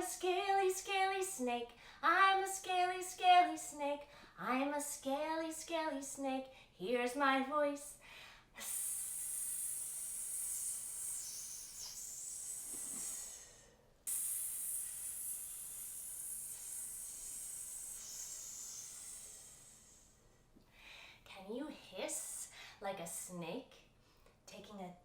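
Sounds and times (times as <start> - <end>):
woman hissing like a snake: 8.6 - 20.2.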